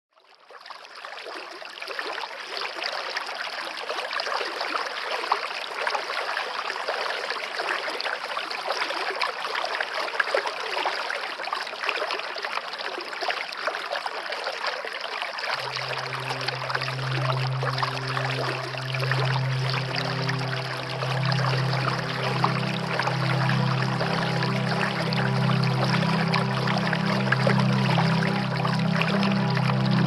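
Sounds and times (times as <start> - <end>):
waterfall rushing: 15.6 - 30.0.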